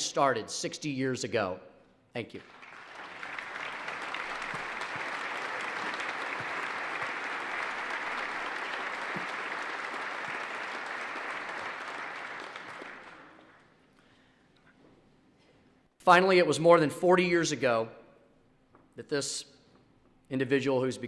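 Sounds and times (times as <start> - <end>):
audience applauding: 2.4 - 13.7.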